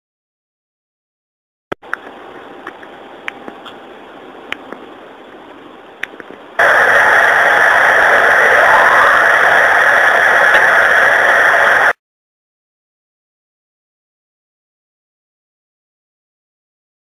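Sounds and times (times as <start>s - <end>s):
recording hiss: 1.8s - 12.0s.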